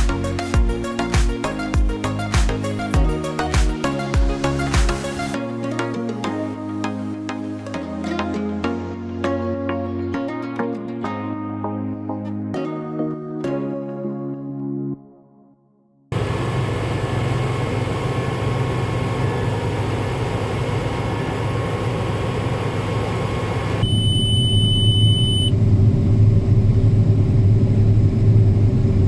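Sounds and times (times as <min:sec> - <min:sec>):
combine harvester engine drone: 0:16.2 - 0:23.9.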